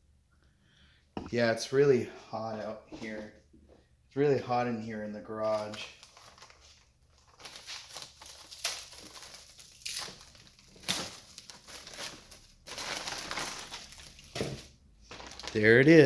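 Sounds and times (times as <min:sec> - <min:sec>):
packaging crinkling and rustling: 0:05.4 - 0:16.0.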